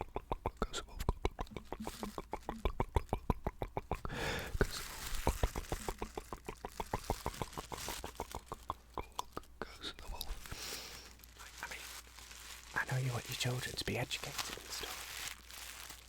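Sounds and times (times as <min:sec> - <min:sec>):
crinkling rustle: 0:04.4 - 0:16.0.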